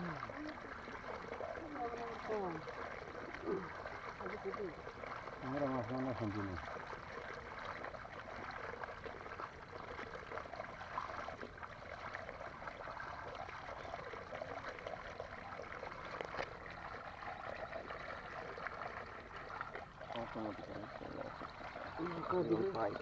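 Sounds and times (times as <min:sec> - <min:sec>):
water splashing and trickling: 0:00.0 - 0:23.0.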